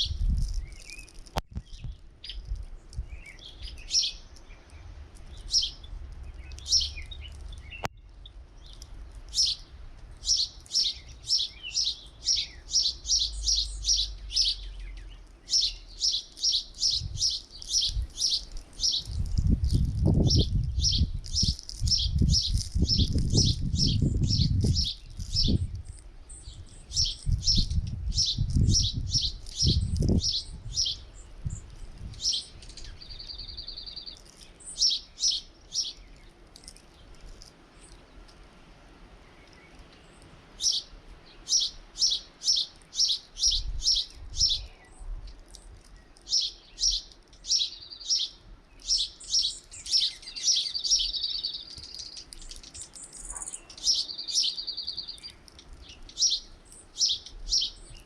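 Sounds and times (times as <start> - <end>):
wind gusts on microphone: 0.0 - 4.1, 16.8 - 34.1, 43.4 - 45.3
songbirds chirping: 0.0 - 58.0.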